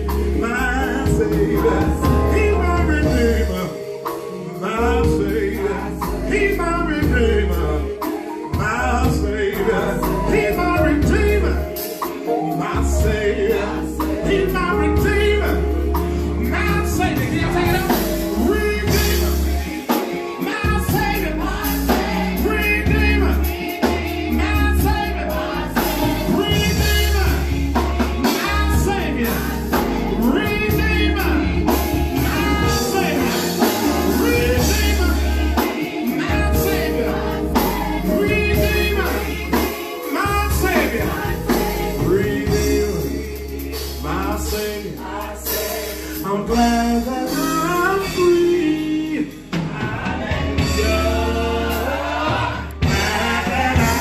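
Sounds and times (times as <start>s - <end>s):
heavy bass line: 0.0s - 3.8s, 12.7s - 19.7s, 20.6s - 45.0s
drums: 0.0s - 54.0s
gospel singing: 0.0s - 54.0s.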